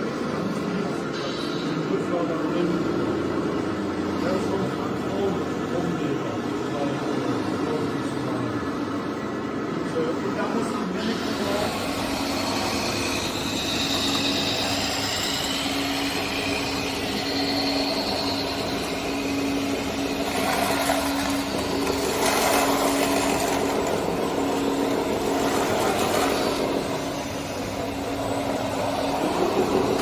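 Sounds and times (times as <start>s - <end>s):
high motor whine: 0.0s - 30.0s
small electric motors humming: 10.8s - 30.0s.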